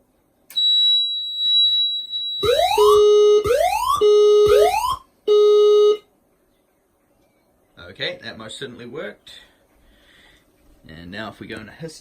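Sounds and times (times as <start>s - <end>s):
fire alarm sounders whooping: 0.5s - 6.0s.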